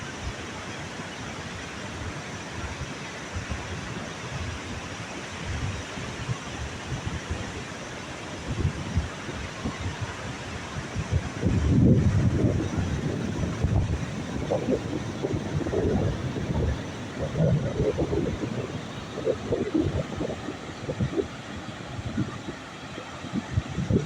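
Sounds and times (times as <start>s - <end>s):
wind buffeting microphone: 8.3s - 24.0s.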